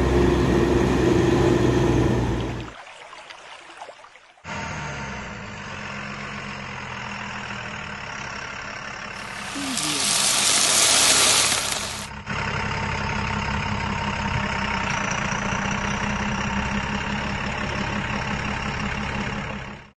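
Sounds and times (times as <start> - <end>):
diesel engine idling: 0.0 - 2.6, 4.6 - 19.9
loud hiss: 9.2 - 12.1.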